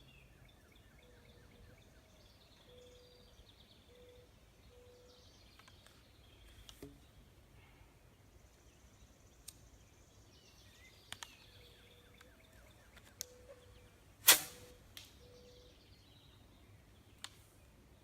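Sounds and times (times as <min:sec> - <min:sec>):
sharp shot with short hiss: 0:14.2 - 0:14.8.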